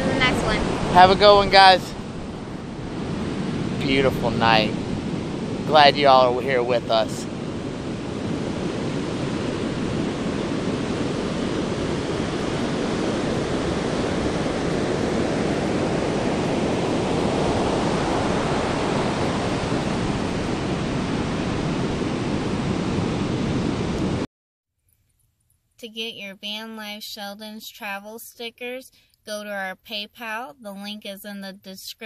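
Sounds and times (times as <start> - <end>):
ocean surf washing: 0.0 - 24.3.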